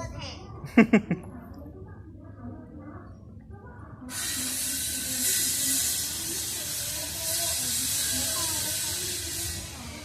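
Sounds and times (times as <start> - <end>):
loud steady hiss: 4.1 - 10.0.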